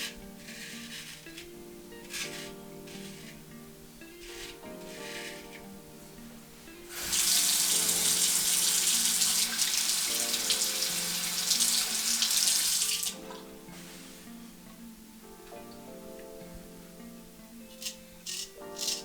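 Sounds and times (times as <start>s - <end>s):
background music: 0.0s - 19.0s
tap running into a sink: 6.9s - 13.4s.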